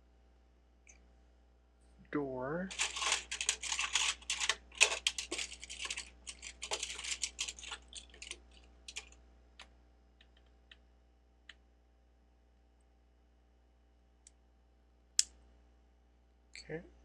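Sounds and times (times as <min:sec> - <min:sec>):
plastic lego pieces clattering: 0:02.7 - 0:09.2.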